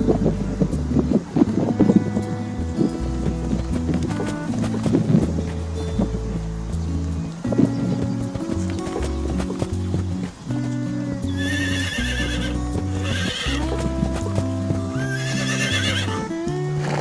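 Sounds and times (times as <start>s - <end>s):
background music with bass notes: 0.0s - 17.0s
hooves clopping: 0.0s - 17.0s
horse whinnying: 11.4s - 13.7s, 15.0s - 16.3s.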